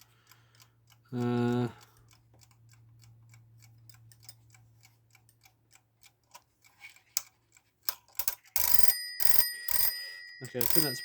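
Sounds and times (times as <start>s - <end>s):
alarm clock ticking: 7.5s - 11.0s.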